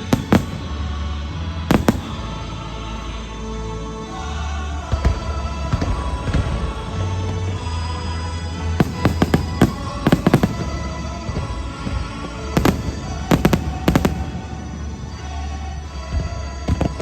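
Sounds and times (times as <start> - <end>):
fireworks bursting: 0.0 - 3.0, 8.6 - 15.5.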